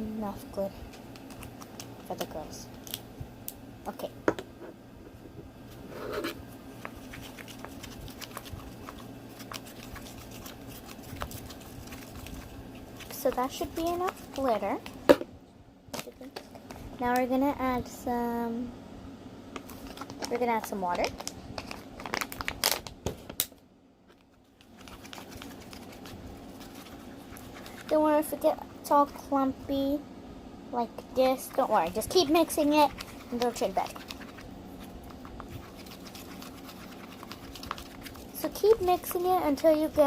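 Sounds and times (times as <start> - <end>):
glitter rustling in container: 5.7 - 15.0, 19.6 - 22.8, 24.2 - 28.4, 31.5 - 40.0.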